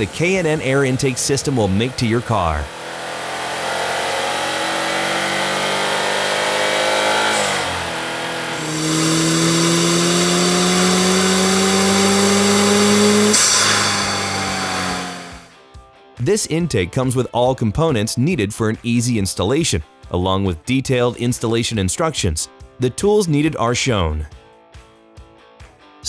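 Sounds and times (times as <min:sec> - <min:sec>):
car engine accelerating hard: 0:00.0 - 0:15.5.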